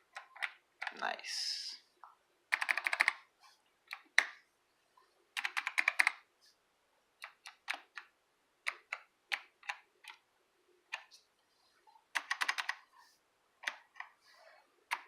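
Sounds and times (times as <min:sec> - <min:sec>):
clicky keyboard keys pressed: 0:02.5 - 0:03.2, 0:05.4 - 0:06.2, 0:07.2 - 0:08.1, 0:12.2 - 0:12.8.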